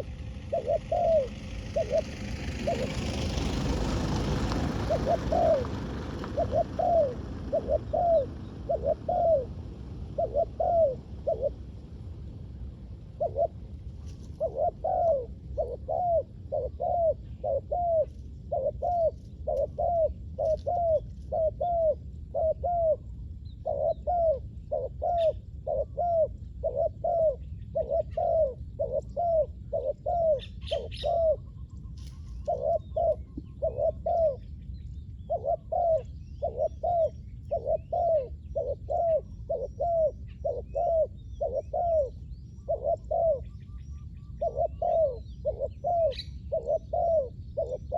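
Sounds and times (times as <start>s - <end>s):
small birds chirping: 0.0s - 11.6s, 13.0s - 47.9s
dove cooing: 0.0s - 34.6s, 35.3s - 47.9s.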